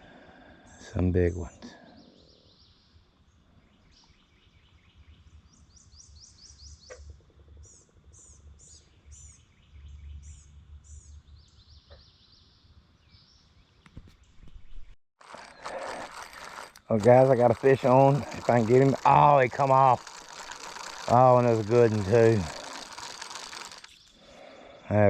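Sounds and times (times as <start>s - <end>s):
birds singing: 0.6s - 15.0s, 23.8s - 25.0s.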